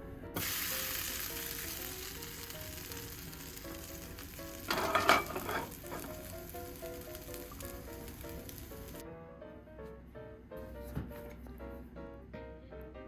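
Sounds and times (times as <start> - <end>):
crackling flare: 0.4 - 9.0
sizzling hiss: 0.4 - 9.0.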